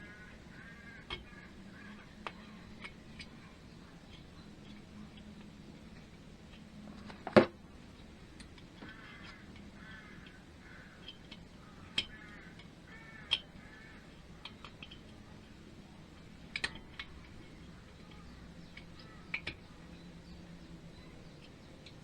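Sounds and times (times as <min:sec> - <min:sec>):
bird calling: 0:00.0 - 0:05.4, 0:08.8 - 0:15.6, 0:17.0 - 0:22.0.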